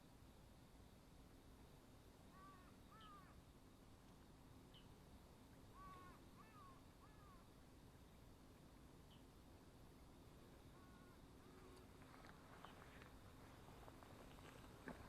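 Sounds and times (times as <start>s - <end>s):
faint crow cawing: 2.3s - 3.4s, 5.7s - 7.5s, 10.7s - 11.6s
small bird chirping: 2.3s - 3.4s, 4.7s - 5.0s.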